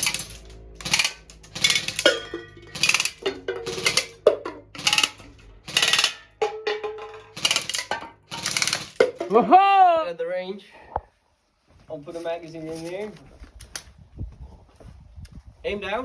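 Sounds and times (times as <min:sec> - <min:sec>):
music with percussive beat: 0:01.0 - 0:05.2, 0:05.8 - 0:09.5.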